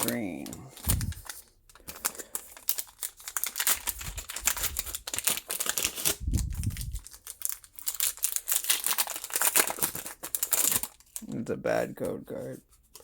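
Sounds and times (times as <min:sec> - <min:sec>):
trading cards being handled: 0:00.0 - 0:02.6
foil wrapper crinkling: 0:00.0 - 0:13.0.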